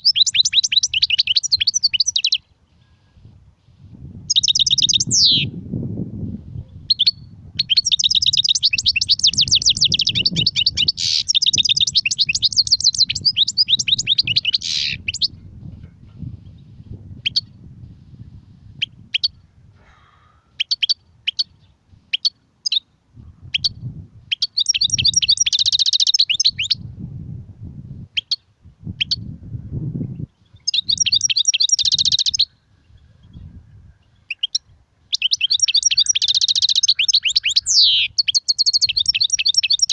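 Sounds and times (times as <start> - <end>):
goldfinch singing: 0.0 - 2.5, 4.3 - 5.5, 6.9 - 15.3, 23.6 - 26.8, 30.6 - 32.5, 34.2 - 39.9.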